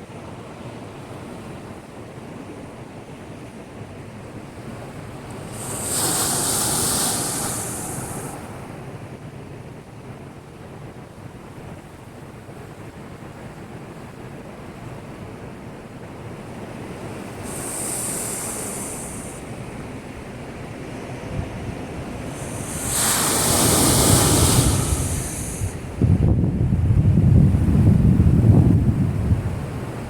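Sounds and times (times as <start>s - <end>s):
surf surging against breakwater: 3.1s - 10.3s, 11.6s - 27.7s.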